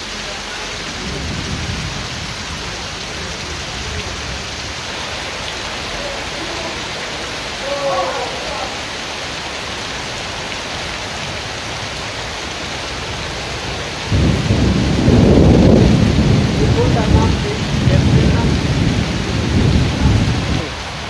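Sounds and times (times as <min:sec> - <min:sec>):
rain falling: 0:00.0 - 0:21.0
rolling thunder rumble: 0:01.0 - 0:04.7, 0:13.4 - 0:21.0.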